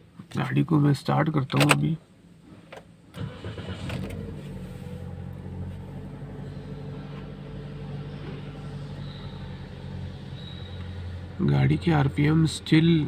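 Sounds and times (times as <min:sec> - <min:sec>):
car engine starting and idling: 0:02.7 - 0:13.0.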